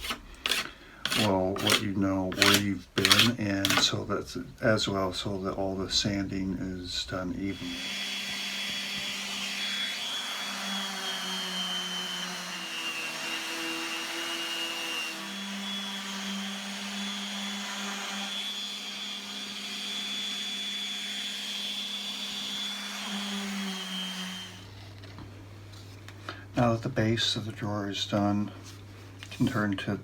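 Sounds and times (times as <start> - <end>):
electric power sander running: 7.5 - 24.9.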